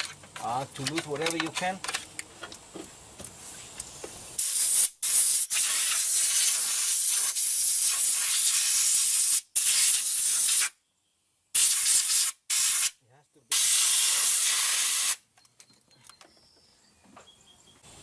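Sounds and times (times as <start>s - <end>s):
compressed-air blow gun hissing: 3.4s - 10.7s, 11.6s - 12.9s, 13.5s - 15.2s.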